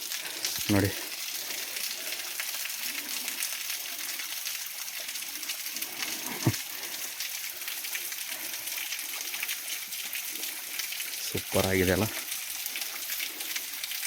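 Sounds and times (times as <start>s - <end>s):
waterfall splashing: 0.0s - 3.4s, 4.8s - 10.4s.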